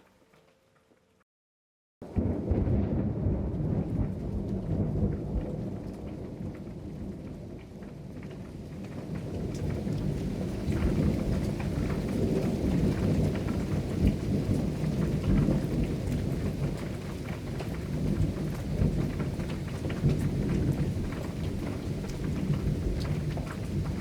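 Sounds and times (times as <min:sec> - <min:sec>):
thunder rumbling: 0:02.0 - 0:07.6
raindrops ticking: 0:08.2 - 0:24.0.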